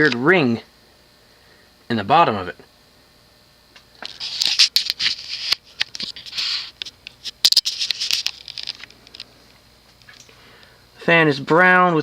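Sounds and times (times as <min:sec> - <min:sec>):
handling noise clicks and rustling: 0:04.0 - 0:09.3.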